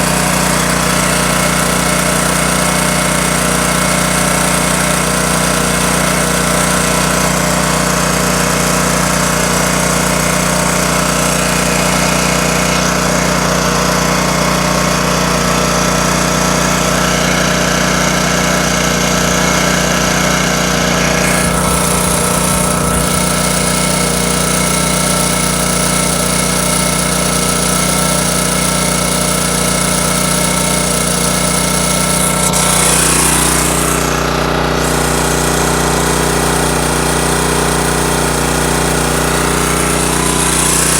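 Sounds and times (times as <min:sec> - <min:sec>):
portable generator running: 0:00.0 - 0:15.8, 0:20.4 - 0:40.9
bright hiss: 0:21.3 - 0:25.1.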